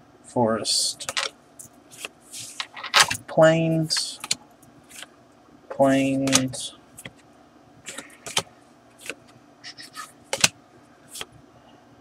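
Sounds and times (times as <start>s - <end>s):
cards tapping down: 7.9s - 10.5s
cards swishing: 9.0s - 10.5s.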